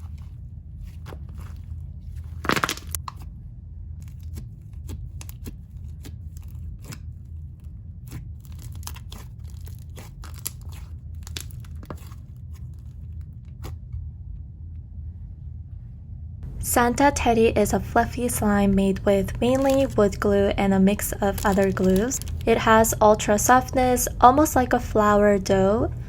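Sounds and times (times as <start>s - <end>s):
steady low hum: 0.0s - 26.0s
slime squelching and popping: 2.2s - 3.2s, 8.0s - 12.2s.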